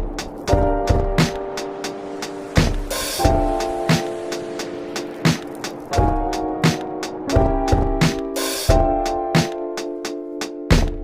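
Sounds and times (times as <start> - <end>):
held keyboard chords: 0.0 - 11.0
kick drum thumps: 0.5 - 1.4, 2.6 - 3.8, 6.0 - 6.5, 7.4 - 9.1, 10.7 - 11.0.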